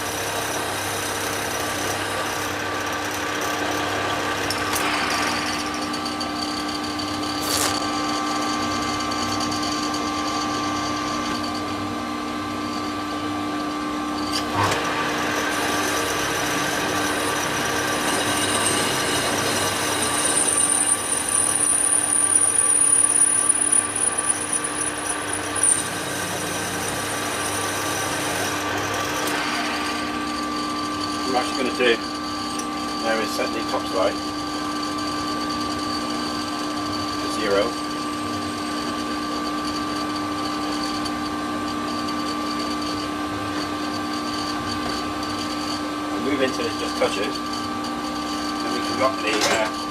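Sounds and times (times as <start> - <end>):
lathe turning metal: 0.0 - 49.9
high steady whine: 4.4 - 9.9.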